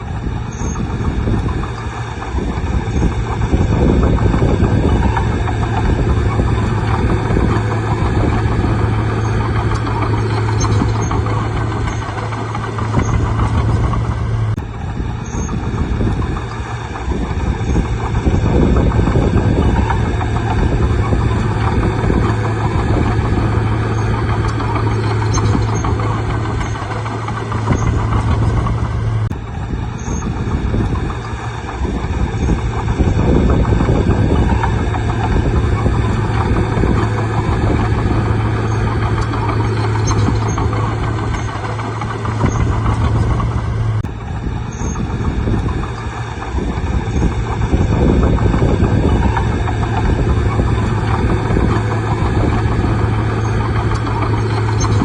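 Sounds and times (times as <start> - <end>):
bulldozer diesel engine running: 0.0 - 55.0
machine working noise: 0.0 - 55.0.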